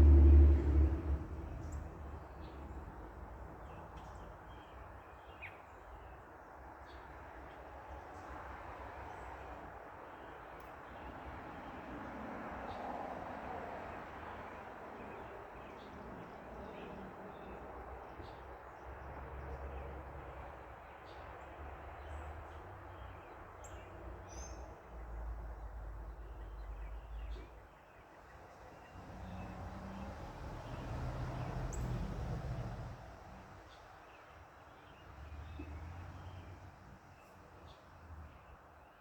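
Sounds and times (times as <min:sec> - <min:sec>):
low rumbles: 0:00.0 - 0:03.4
distant traffic hiss: 0:00.0 - 0:04.7, 0:22.7 - 0:38.8.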